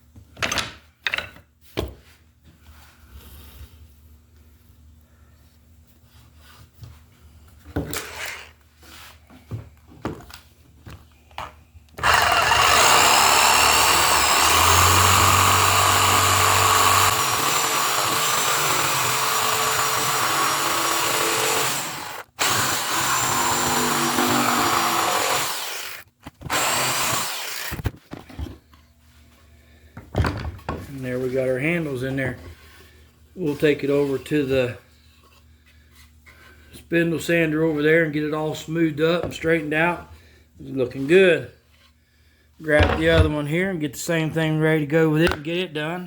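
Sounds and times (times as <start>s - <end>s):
jigsaw cutting wood: 12.0s - 27.9s.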